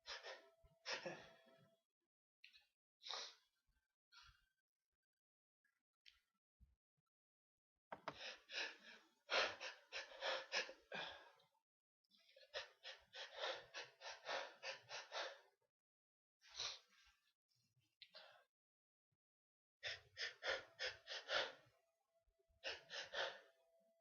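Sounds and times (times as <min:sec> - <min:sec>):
person gasping breathily: 0:00.0 - 0:01.6.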